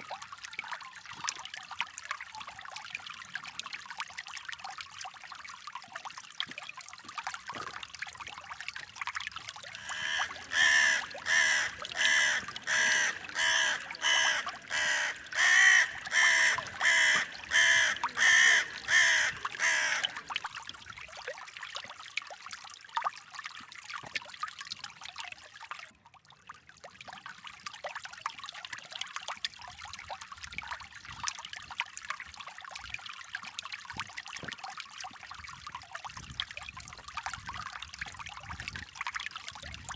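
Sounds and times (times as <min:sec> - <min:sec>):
creek trickling and babbling: 0:00.0 - 0:39.9
bird calling: 0:09.7 - 0:20.4.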